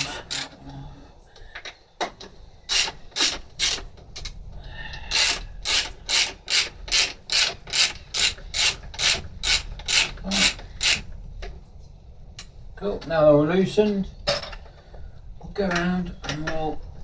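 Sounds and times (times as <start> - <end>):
socket ratchet clicking: 0.0 - 0.6, 2.7 - 4.3, 5.1 - 11.1.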